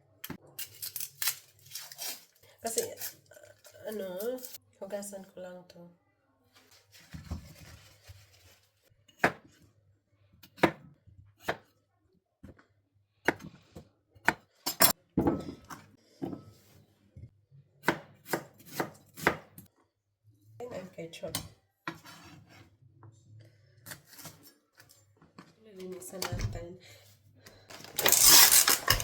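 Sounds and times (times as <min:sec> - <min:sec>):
knife chopping on cutting board: 0:17.8 - 0:19.5.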